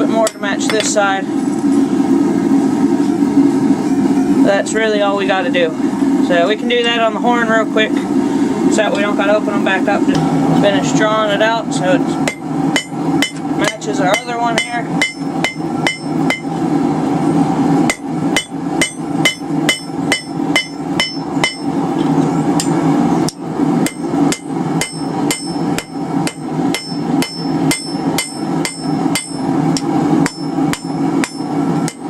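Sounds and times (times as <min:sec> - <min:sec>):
steady low rumble: 0:00.0 - 0:32.0
hammer blows ringing on anvil: 0:12.3 - 0:16.5, 0:17.9 - 0:21.7, 0:23.8 - 0:32.0.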